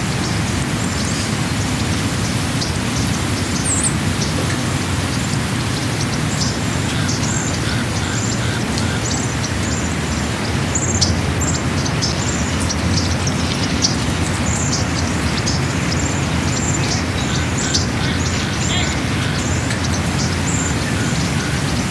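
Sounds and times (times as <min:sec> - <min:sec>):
birds chirping: 0:00.0 - 0:21.9.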